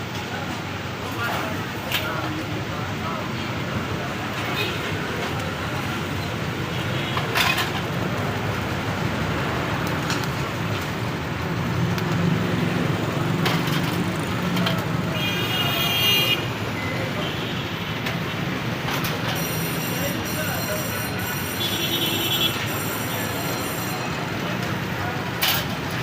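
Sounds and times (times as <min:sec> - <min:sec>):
people's voices: 0:00.0 - 0:26.0
street traffic: 0:00.0 - 0:26.0
high-pitched vehicle horn: 0:19.4 - 0:24.2.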